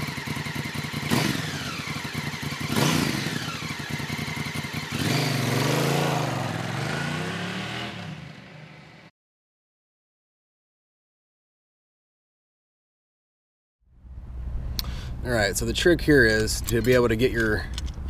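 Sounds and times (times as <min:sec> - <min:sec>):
motorcycle engine revving: 0:00.0 - 0:09.1.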